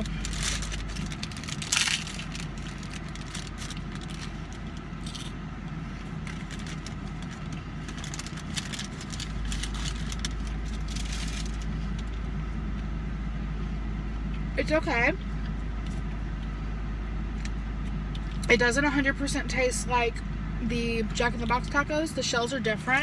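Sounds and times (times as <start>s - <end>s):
chewing crunches: 0.0s - 5.3s
car engine idling: 0.0s - 23.0s.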